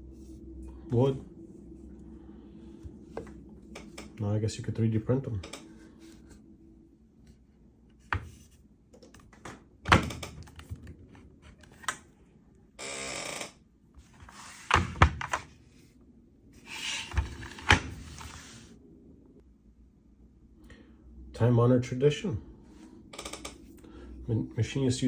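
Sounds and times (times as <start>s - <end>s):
sliding scrape: 14.1s - 14.8s, 16.6s - 18.8s.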